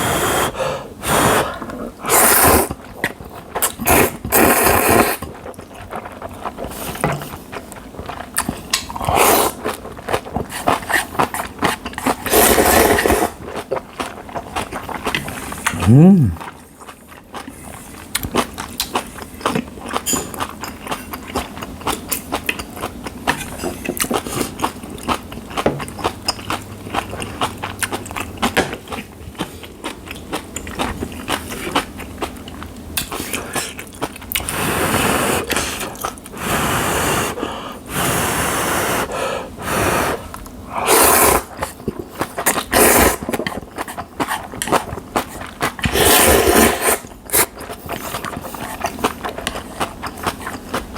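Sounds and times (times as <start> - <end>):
noodles slurped: 0.0 - 3.0, 3.6 - 7.0, 45.8 - 49.9
wet chewing: 41.5 - 50.9.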